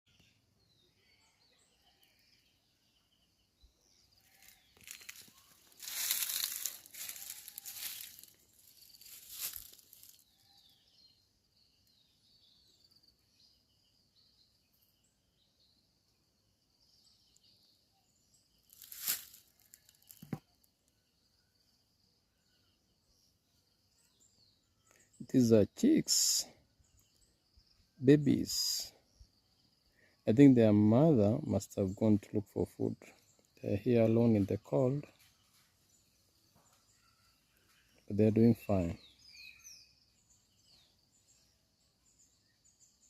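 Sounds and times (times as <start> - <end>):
faint high bird chirping: 0.1 - 43.0
rustling and crinkling: 4.3 - 10.2, 18.7 - 20.5.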